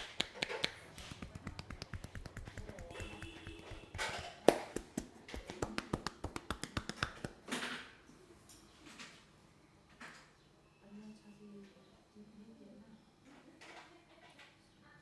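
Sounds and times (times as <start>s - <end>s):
hands brushing rubs: 0.0s - 7.5s
loud hand snap: 0.0s - 7.5s
hands tapping and slapping: 0.0s - 7.6s.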